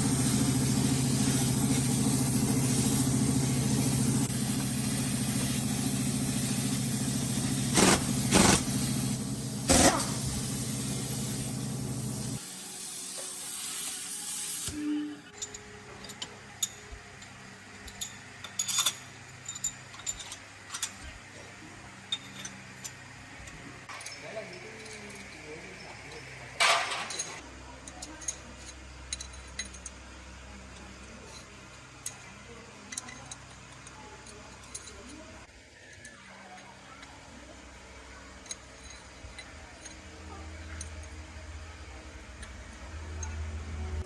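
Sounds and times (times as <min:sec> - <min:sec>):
engine running: 0:00.0 - 0:12.4
loud hiss: 0:00.0 - 0:14.8.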